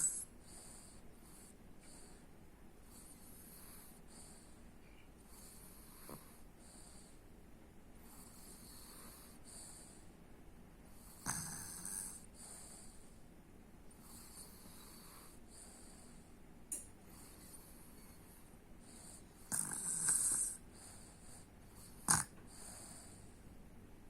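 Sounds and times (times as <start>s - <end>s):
faint snoring: 0.0s - 7.3s, 8.0s - 10.1s, 10.9s - 13.2s, 13.9s - 16.4s, 17.0s - 23.6s
sudden loud snort: 11.1s - 12.3s, 19.0s - 20.6s, 21.8s - 23.2s.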